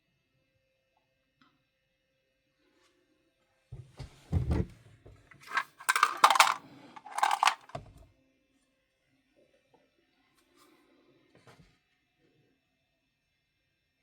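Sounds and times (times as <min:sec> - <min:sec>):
hard objects clattering: 0:05.4 - 0:07.8.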